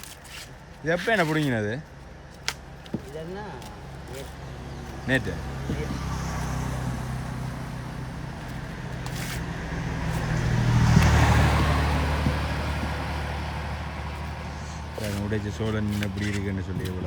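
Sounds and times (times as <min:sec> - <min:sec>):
vehicle engine passing by: 0:04.3 - 0:17.0.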